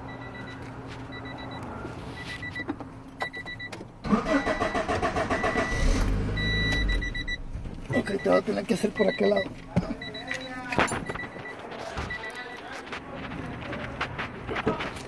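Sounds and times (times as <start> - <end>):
short electronic beep: 3.2 - 8.4
starter cranking car engine: 4.0 - 8.0.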